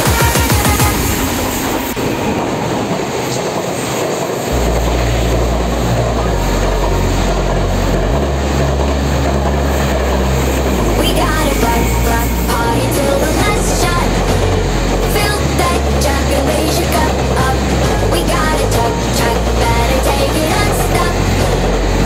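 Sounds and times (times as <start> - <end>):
train wheels rumbling on rails: 0.0 - 22.0
deep low drone: 4.5 - 22.0.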